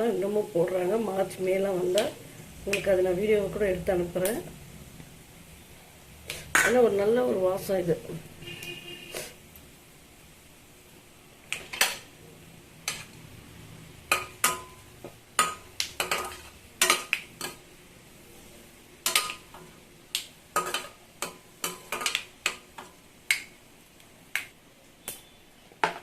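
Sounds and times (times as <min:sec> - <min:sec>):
food sizzling in hot oil: 0:09.1 - 0:24.2
metal spoon scraping a pan: 0:11.5 - 0:12.1, 0:12.8 - 0:13.2, 0:15.4 - 0:17.6.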